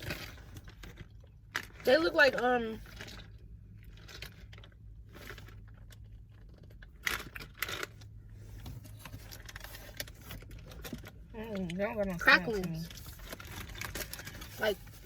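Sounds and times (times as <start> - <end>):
snack packaging crackling: 2.8 - 8.1, 8.9 - 15.0.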